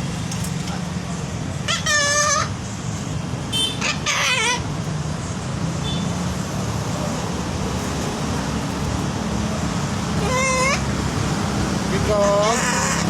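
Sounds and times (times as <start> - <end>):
cockatoo calling: 1.6 - 2.6, 3.5 - 4.7, 10.1 - 11.0, 12.2 - 13.0.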